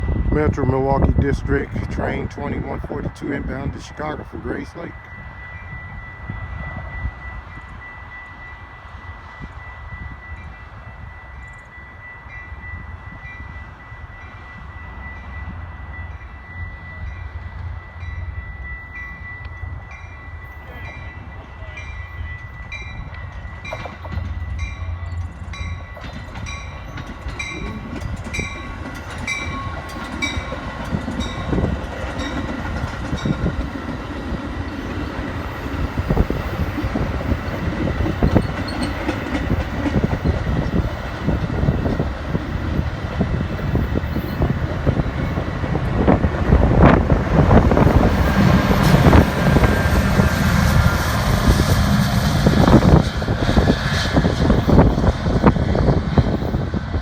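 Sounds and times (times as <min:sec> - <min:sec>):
locomotive bell ringing: 0:00.0 - 0:56.8
diesel locomotive engine rumble: 0:00.0 - 0:57.0
train wheels rattling over rails: 0:21.9 - 0:57.0.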